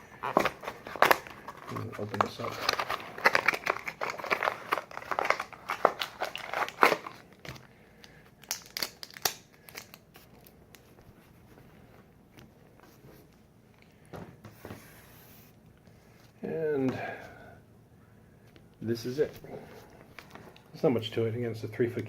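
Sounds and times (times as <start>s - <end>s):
packaging crinkling and tearing: 0.0s - 10.9s.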